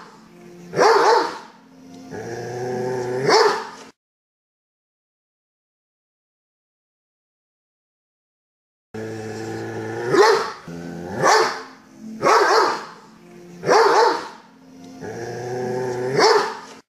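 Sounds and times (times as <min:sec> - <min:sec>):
dog barking: 0:00.7 - 0:01.5, 0:03.2 - 0:03.8, 0:10.1 - 0:13.0, 0:13.6 - 0:14.4, 0:16.1 - 0:16.7
dog growling: 0:02.1 - 0:03.6, 0:09.0 - 0:12.8, 0:15.0 - 0:16.6.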